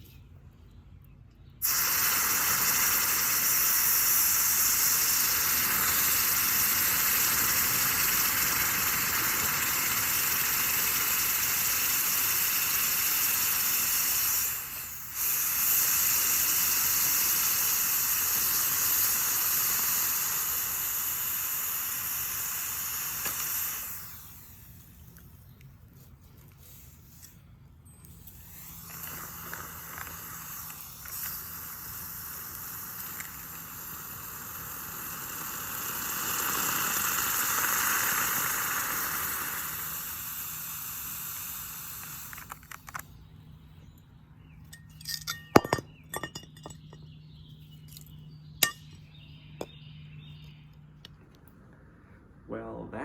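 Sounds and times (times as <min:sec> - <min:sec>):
steady hiss: 0:01.6 - 0:27.4, 0:28.1 - 0:43.0
sharp clinks: 0:44.6 - 0:47.1, 0:47.9 - 0:49.7.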